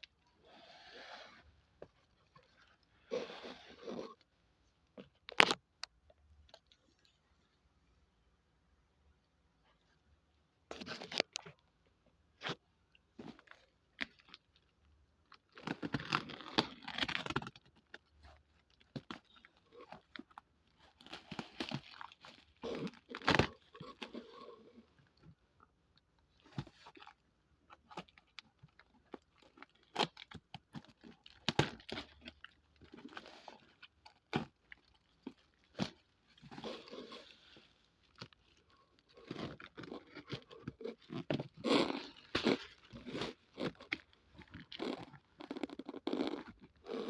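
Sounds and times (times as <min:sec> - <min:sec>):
packaging crinkling and tearing: 0:15.3 - 0:24.2.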